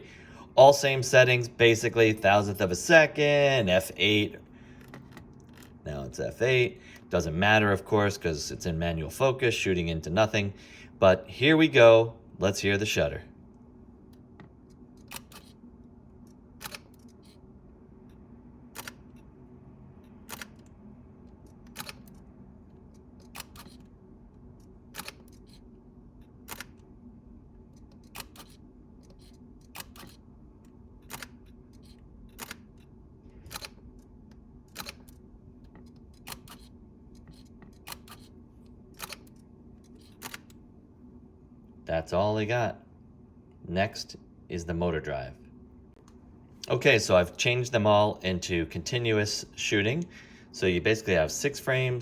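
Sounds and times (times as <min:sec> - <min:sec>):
low steady hum: 0:00.0 - 0:52.0
camera shutter clicks: 0:15.0 - 0:15.6, 0:18.8 - 0:19.2, 0:21.7 - 0:22.2, 0:23.2 - 0:23.9, 0:25.0 - 0:25.6, 0:29.2 - 0:30.2, 0:36.2 - 0:36.7, 0:37.4 - 0:38.3.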